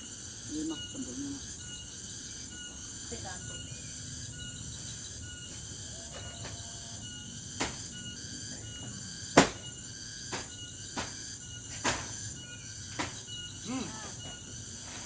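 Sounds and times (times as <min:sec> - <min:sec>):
high-pitched insect chorus: 0:00.0 - 0:15.0
sharp knocks: 0:09.4 - 0:09.6.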